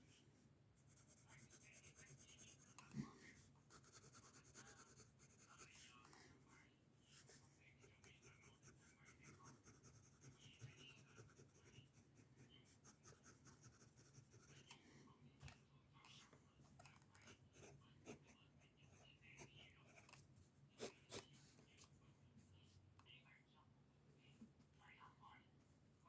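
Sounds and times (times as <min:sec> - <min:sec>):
pencil scratching on paper: 0:00.8 - 0:06.0, 0:07.1 - 0:14.8, 0:17.2 - 0:20.2.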